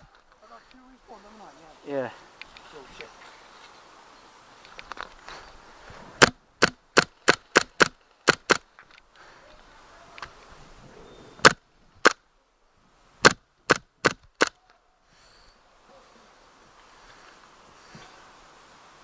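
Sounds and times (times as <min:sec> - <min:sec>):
airsoft gun shots: 0:06.2 - 0:08.6.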